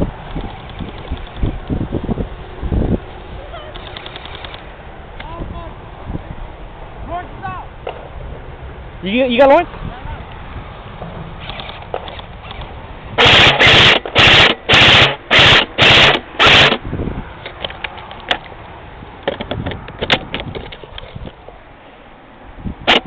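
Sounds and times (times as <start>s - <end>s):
airsoft gun automatic fire: 13.2s - 16.8s.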